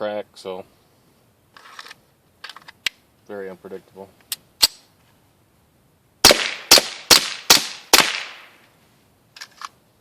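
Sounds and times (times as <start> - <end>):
suppressed pistol shots: 6.2 - 8.6.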